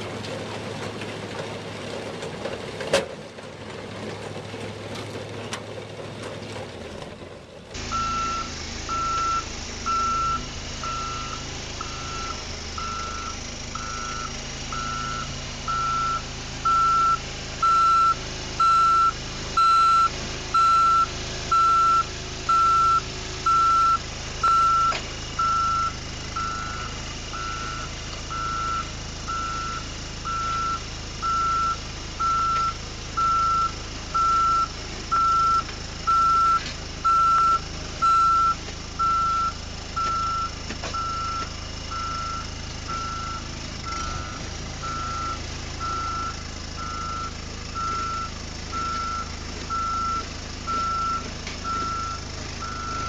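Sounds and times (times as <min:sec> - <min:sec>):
diesel engine hum: 0:00.0 - 0:53.0
reversing alarm beeps: 0:07.9 - 0:53.0.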